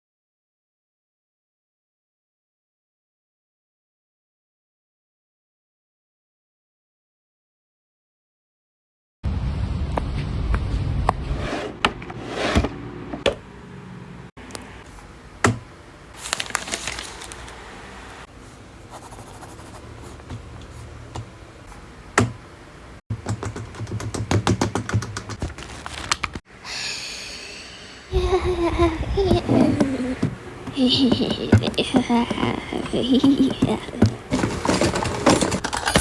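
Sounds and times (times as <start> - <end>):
scraping and rustling: 11.2 - 13.2
rapid typing-like clicks: 23.1 - 25.4.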